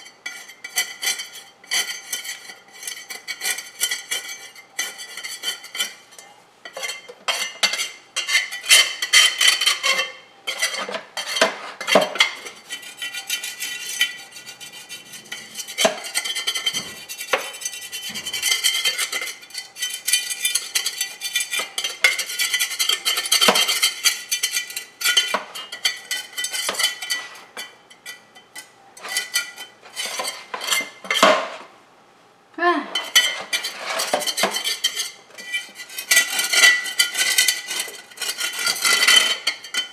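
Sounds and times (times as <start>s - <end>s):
scraping and clinking on floor: 0.0s - 31.7s, 33.0s - 39.9s.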